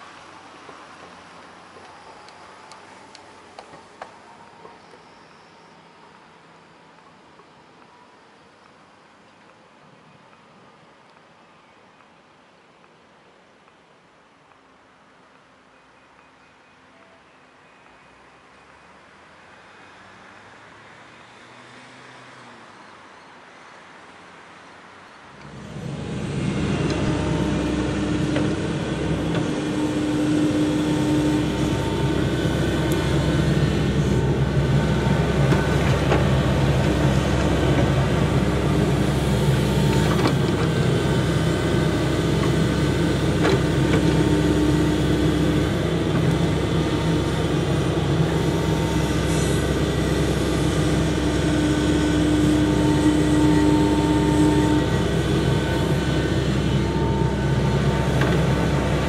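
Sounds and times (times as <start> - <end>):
construction machine engine running: 25.4 - 59.0
high machine whine: 25.4 - 59.0.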